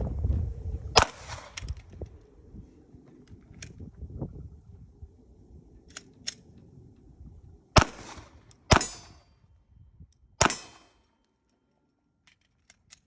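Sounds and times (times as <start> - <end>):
pistol shots with echo: 7.8 - 9.3, 10.4 - 11.0.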